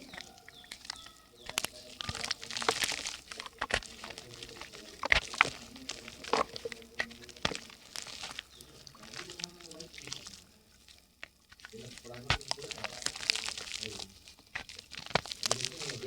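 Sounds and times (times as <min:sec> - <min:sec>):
hissing fizz: 0:00.0 - 0:16.0
wet mud crackling: 0:00.0 - 0:16.0.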